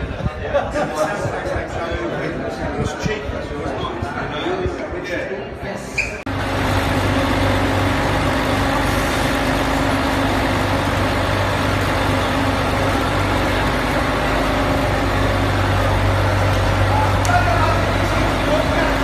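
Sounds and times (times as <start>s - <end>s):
engine drone: 6.3s - 19.0s.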